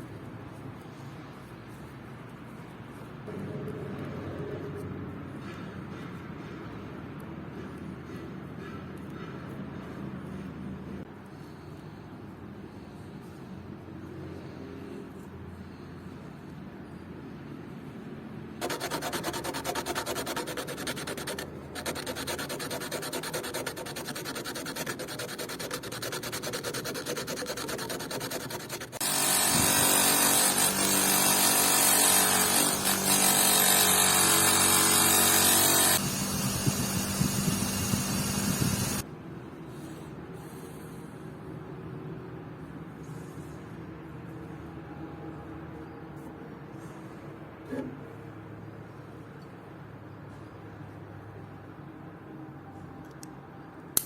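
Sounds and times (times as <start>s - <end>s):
abrasive scratching: 18.6s - 33.8s.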